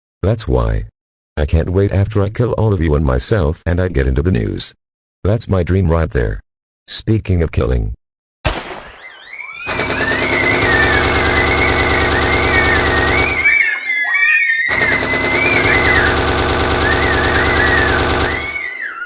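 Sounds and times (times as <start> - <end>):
high wavering screams: 9.0 - 19.0
rapid automatic gunfire: 9.6 - 19.0.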